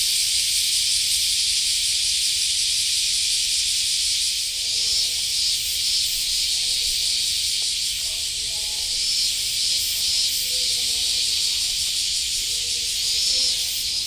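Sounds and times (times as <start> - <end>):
steady high-pitched hiss: 0.0 - 14.0.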